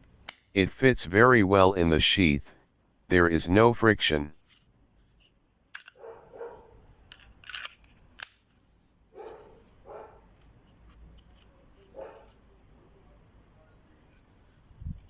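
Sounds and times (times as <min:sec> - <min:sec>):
knife sheath clicks: 0:05.7 - 0:06.0.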